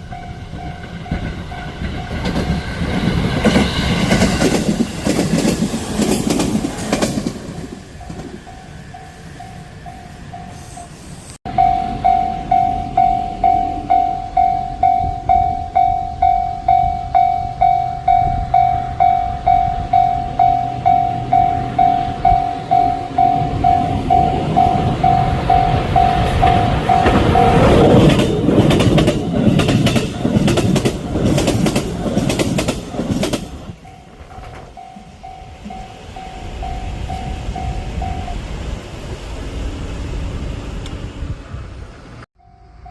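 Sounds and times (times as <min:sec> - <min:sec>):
train wheels clattering over rail joints: 0:00.9 - 0:08.5, 0:23.5 - 0:35.0
level crossing warning bell: 0:08.0 - 0:31.0, 0:33.2 - 0:38.6, 0:42.4 - 0:42.9.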